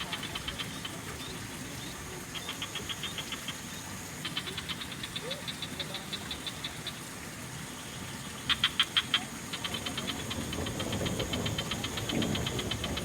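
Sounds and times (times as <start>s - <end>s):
trickling water: 0.0s - 13.0s
frogs croaking in pulses: 8.4s - 13.0s.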